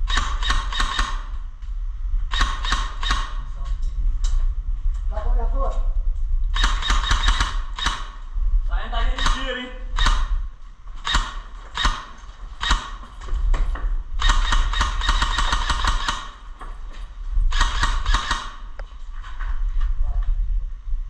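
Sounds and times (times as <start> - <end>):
airsoft gun shots: 0.0 - 1.3, 2.3 - 3.4, 6.5 - 8.2, 9.1 - 10.4, 11.0 - 13.0, 14.2 - 16.4, 17.5 - 18.6.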